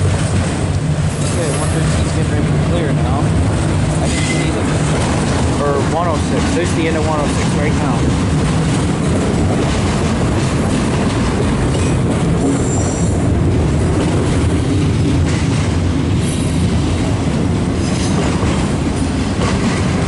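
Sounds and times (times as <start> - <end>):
freight train wheels rumbling: 0.0 - 20.0
high wheel squeals: 12.6 - 13.2.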